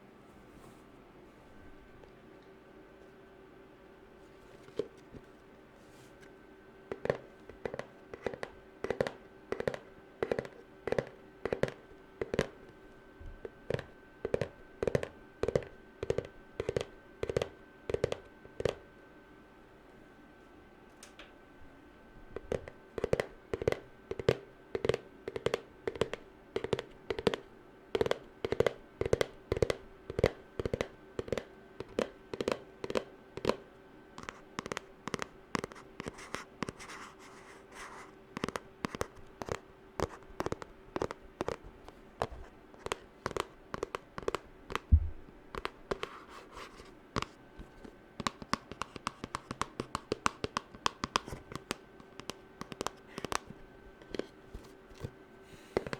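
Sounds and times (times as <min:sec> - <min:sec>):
fingernails tapping: 0:06.9 - 0:12.6, 0:13.4 - 0:18.8, 0:22.4 - 0:33.6, 0:34.2 - 0:55.9.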